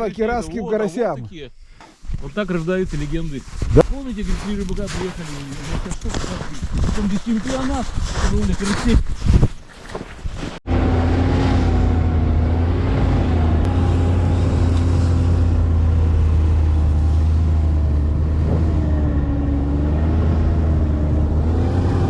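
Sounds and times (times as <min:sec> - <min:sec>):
engine droning steadily: 0:10.7 - 0:22.0.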